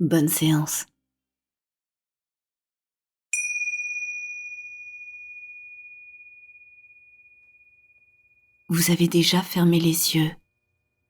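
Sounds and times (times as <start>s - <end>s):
small bell chime ringing: 3.4s - 8.8s.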